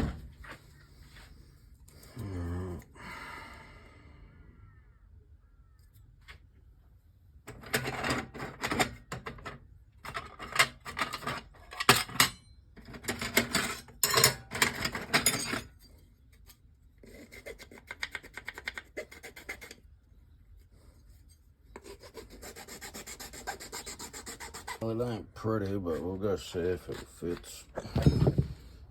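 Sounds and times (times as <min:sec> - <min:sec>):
hand tool rasping strokes: 0:21.2 - 0:27.6.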